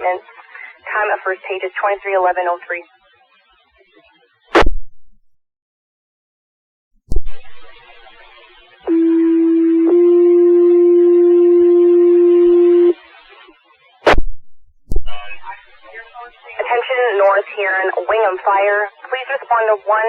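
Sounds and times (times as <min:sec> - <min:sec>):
radio static hiss: 0:00.0 - 0:02.8, 0:07.1 - 0:08.9, 0:14.9 - 0:20.0.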